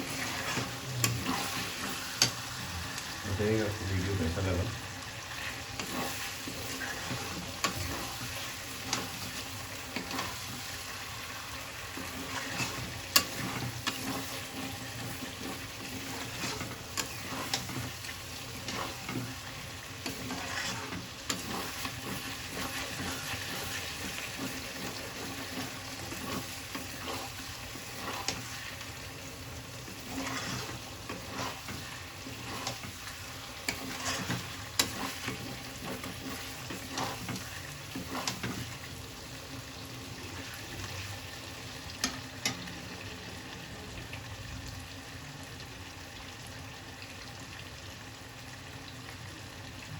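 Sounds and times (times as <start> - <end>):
spatula scraping and knocking pan: 0.0 - 2.6, 5.3 - 10.8, 11.8 - 29.0, 29.8 - 38.9
chicken sizzling in a pan: 0.0 - 49.9.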